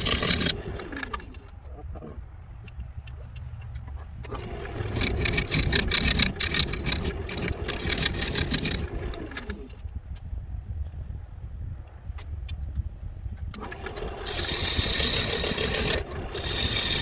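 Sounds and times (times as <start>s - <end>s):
gouge chattering into spinning wood: 0.0s - 0.7s, 4.8s - 8.9s, 14.2s - 17.0s
wood lathe motor humming: 0.0s - 0.9s, 4.4s - 9.5s, 13.6s - 17.0s.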